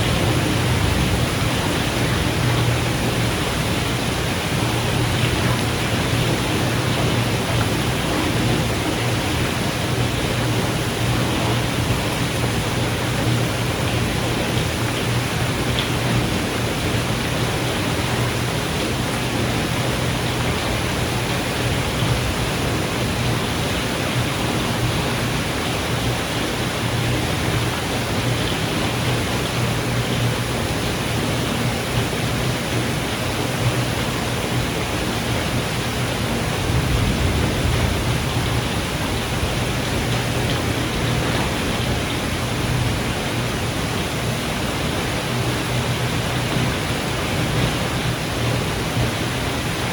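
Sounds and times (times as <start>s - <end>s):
low thunder rumble: 0.0s - 14.8s, 36.0s - 43.6s
steady rain: 0.0s - 49.9s.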